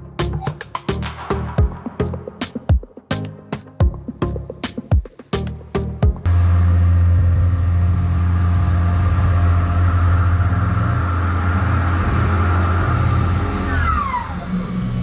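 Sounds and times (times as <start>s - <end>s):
milling machine humming: 6.3s - 15.0s.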